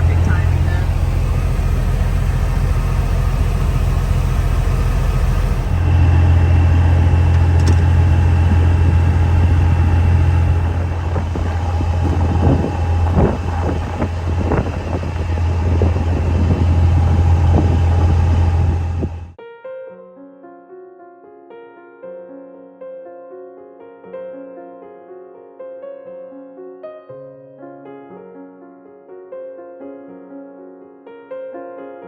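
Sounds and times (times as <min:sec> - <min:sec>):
vehicle engine rumbling: 0:00.0 - 0:19.4
light knocks and rattles: 0:05.8 - 0:19.2.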